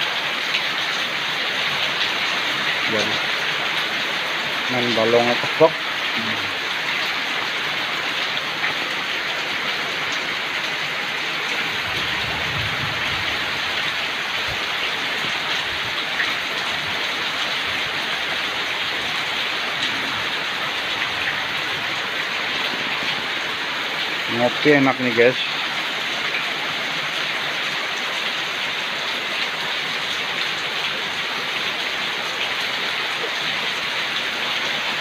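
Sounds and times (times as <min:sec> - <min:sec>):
heavy rain pouring: 0:00.0 - 0:35.0
raindrops ticking: 0:00.4 - 0:12.4.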